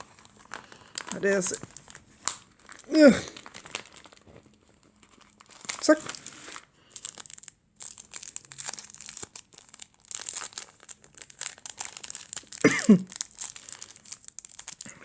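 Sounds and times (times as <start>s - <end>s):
packaging crinkling: 0.0s - 15.0s
short vocal sound: 2.9s - 3.4s.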